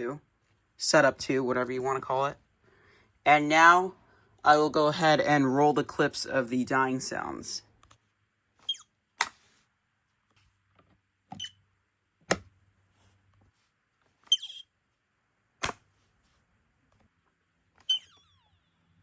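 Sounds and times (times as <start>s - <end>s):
smoke alarm chirps: 8.7s - 8.9s, 14.3s - 14.6s, 17.9s - 18.6s.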